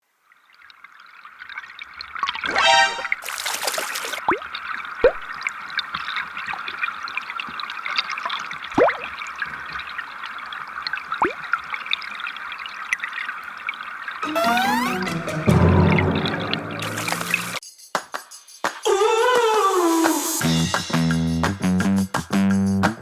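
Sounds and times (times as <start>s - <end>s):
stream running over rocks: 0.4s - 14.4s.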